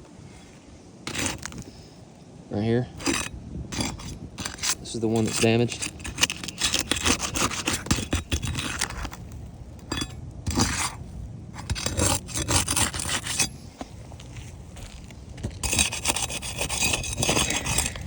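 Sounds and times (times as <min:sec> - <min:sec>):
scraping on roof shingles: 0:01.1 - 0:01.8, 0:03.0 - 0:09.3.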